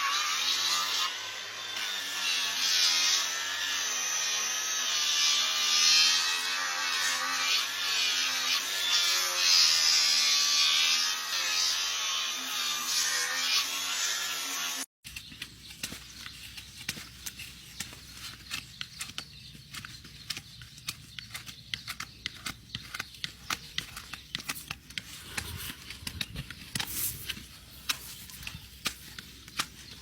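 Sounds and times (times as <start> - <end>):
power tool grinding: 0.0 - 14.9.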